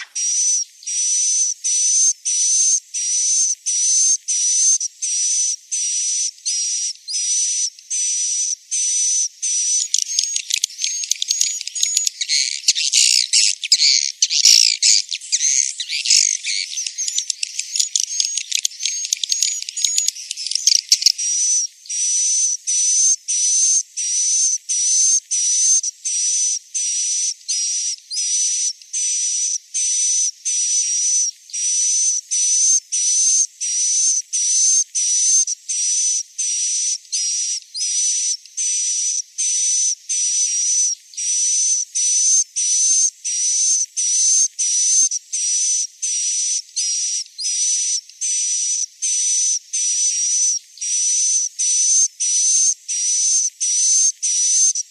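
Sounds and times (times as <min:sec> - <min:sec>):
high-pitched bird chirps: 0:00.0 - 0:02.7, 0:04.0 - 0:24.1.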